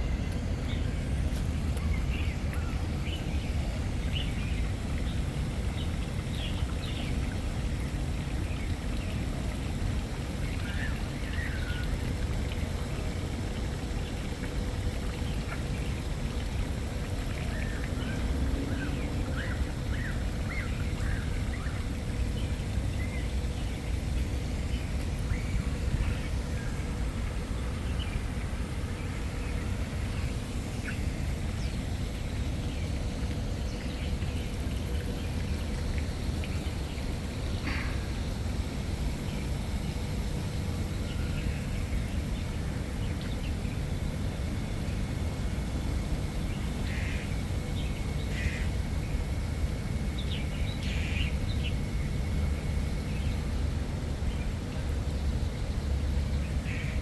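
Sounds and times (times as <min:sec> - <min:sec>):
low outdoor rumble: 0:00.0 - 0:57.0.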